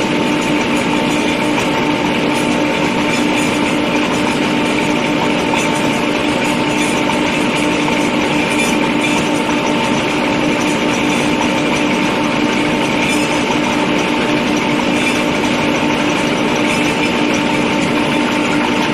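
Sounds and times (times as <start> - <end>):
drilling rig engine humming: 0.0 - 18.9.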